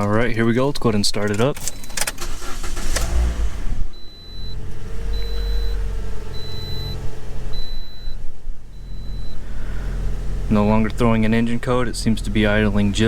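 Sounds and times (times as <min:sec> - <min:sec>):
car engine starting and idling: 0:00.0 - 0:13.0
high dashboard warning chime: 0:03.9 - 0:09.5.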